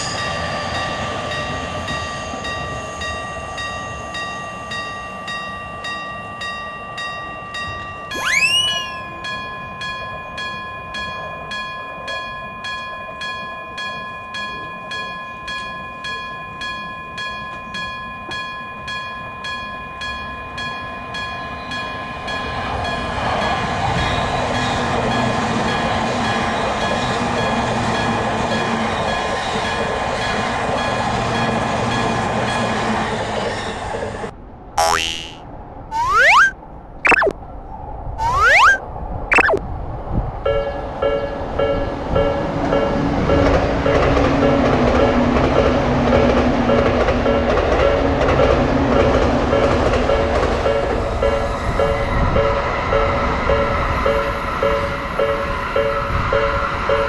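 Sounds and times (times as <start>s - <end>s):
level crossing warning bell ringing: 1.9s - 21.5s
short gliding tone: 8.1s - 9.1s, 34.8s - 36.5s, 37.1s - 37.3s, 38.2s - 39.6s.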